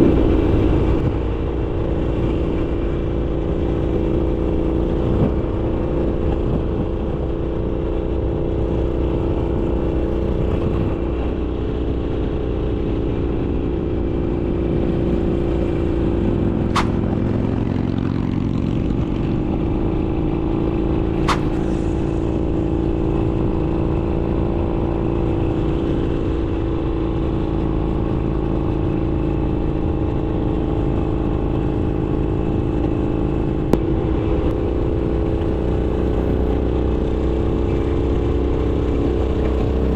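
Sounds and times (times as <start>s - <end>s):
motorcycle engine while riding: 0.0s - 39.9s
short sharp clicks: 16.7s - 17.0s, 21.2s - 22.0s.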